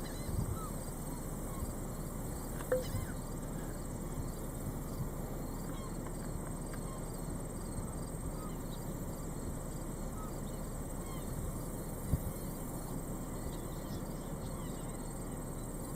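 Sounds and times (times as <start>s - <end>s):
wind buffeting microphone: 0.0s - 5.6s, 11.2s - 13.5s
insect trilling: 0.0s - 15.9s.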